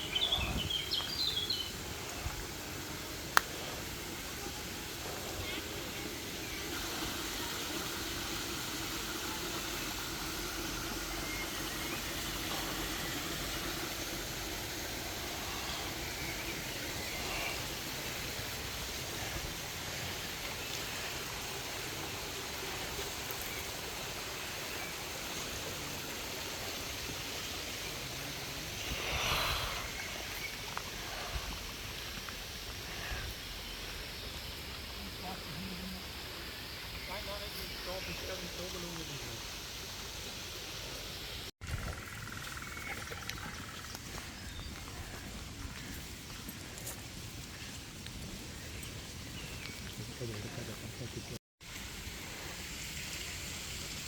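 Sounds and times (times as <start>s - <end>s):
stream flowing: 0.9s - 32.6s.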